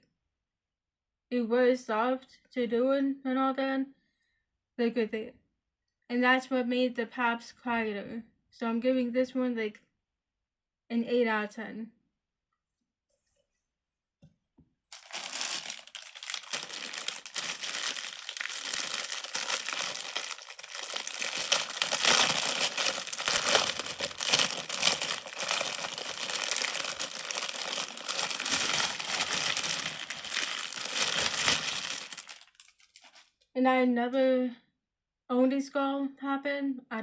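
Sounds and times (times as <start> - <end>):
plastic crinkling: 14.9 - 33.3.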